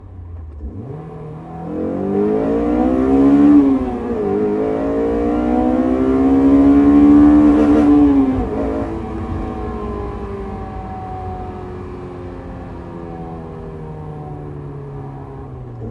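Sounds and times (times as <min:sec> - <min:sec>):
car engine accelerating hard: 0:00.0 - 0:15.9.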